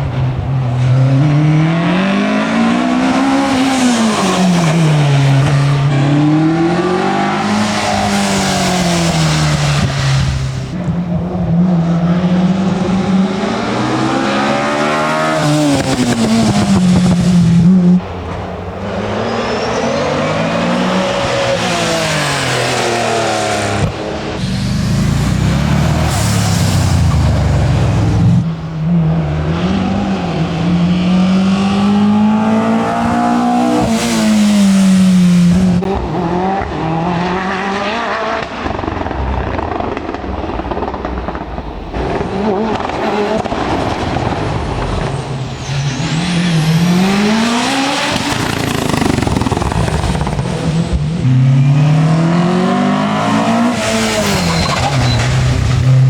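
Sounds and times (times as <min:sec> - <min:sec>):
race car engine revving: 0:00.0 - 0:56.0.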